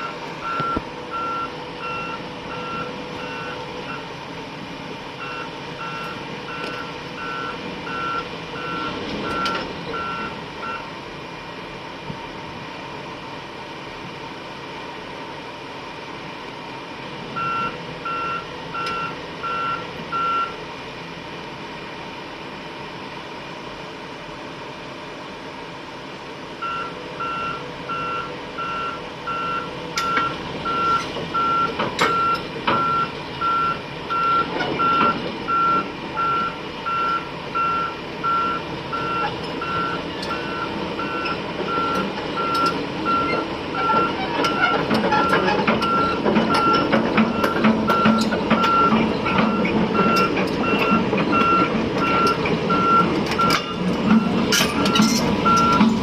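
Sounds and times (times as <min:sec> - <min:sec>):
excavator travel alarm beeping: 0:00.0 - 0:04.1, 0:05.2 - 0:10.9, 0:17.4 - 0:20.6, 0:26.6 - 0:56.0
excavator engine and hydraulics: 0:00.0 - 0:56.0.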